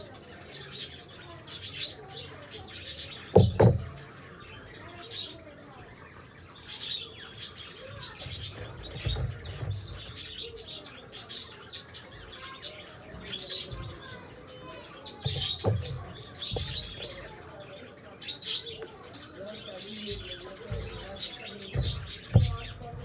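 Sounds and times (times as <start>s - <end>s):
small birds chirping: 0.0s - 23.0s
dull low thumps: 21.7s - 23.0s.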